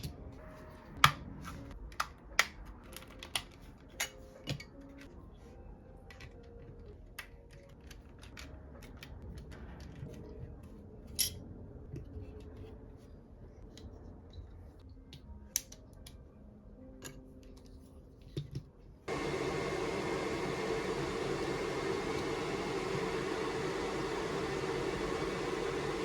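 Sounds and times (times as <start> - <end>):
plastic parts clicking and tapping: 1.8 - 5.1
ventilator fan rushing air: 19.1 - 26.0.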